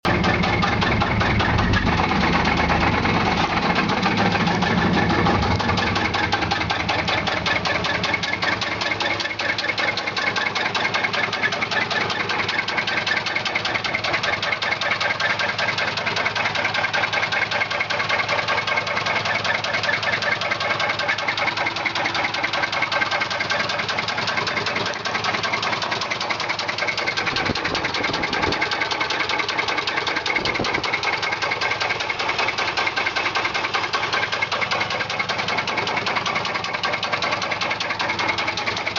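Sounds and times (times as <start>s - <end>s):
engine knocking: 0.0s - 38.9s.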